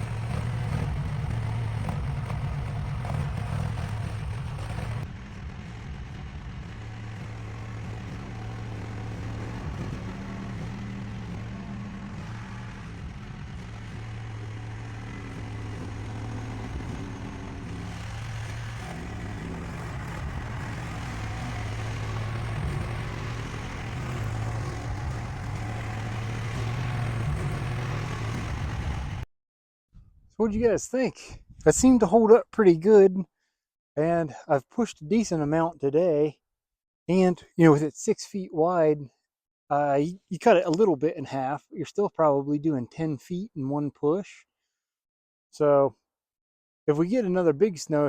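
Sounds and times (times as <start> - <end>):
dozer blade pushing snow: 0.0 - 29.2
excavator engine running: 0.0 - 29.2.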